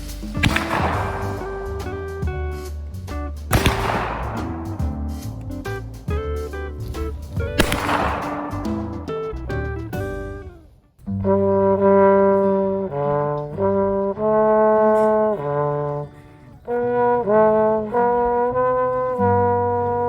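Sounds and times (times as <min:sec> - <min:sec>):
brass ensemble sustained chords: 0:11.2 - 0:20.0.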